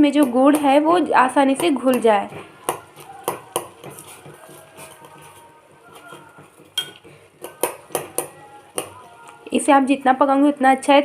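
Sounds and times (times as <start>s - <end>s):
spoon clinking against a pot: 1.7s - 9.5s
liquid boiling: 2.2s - 9.6s.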